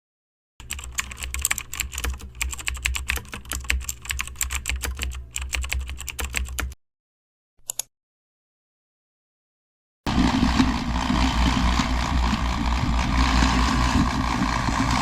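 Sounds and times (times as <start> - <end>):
typing on a keyboard: 0.6 - 6.8, 7.6 - 7.9
steady low hum: 10.1 - 15.0.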